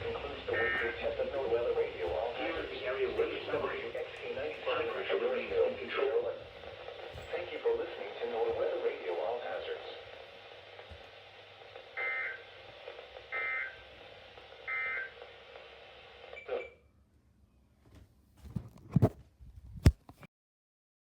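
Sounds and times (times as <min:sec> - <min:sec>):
two-tone data burst warbles: 0:00.0 - 0:01.3, 0:11.9 - 0:12.6, 0:13.3 - 0:13.8, 0:14.6 - 0:15.2
radio static: 0:00.0 - 0:16.8.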